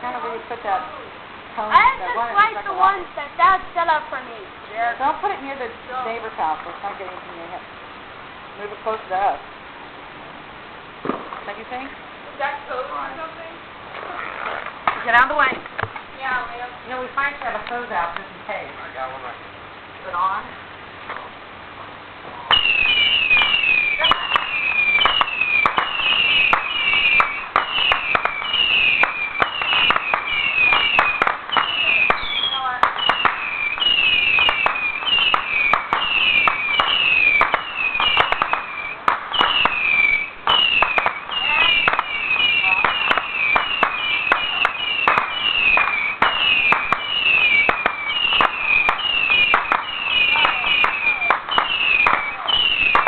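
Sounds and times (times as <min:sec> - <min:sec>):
firework crackling pops: 0:00.0 - 0:19.4, 0:20.0 - 0:53.0
firework falling whistles: 0:22.3 - 0:53.0.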